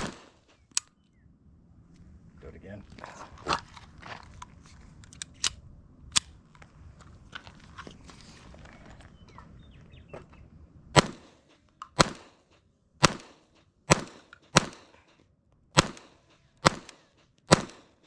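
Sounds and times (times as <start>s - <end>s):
pistol shots: 0.0s - 0.5s, 11.0s - 15.1s, 15.8s - 18.0s.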